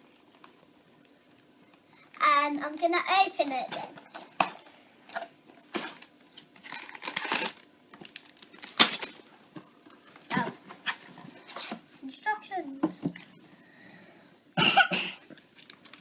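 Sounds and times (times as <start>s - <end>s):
plastic bags and paper rustling: 2.1s - 9.3s, 15.3s - 16.0s.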